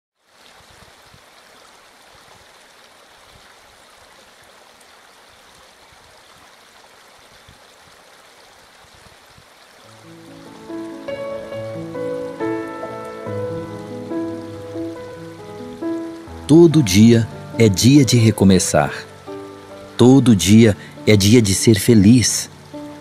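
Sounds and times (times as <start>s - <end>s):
stream water flowing: 0.2s - 23.0s
soft music with held notes: 9.9s - 23.0s.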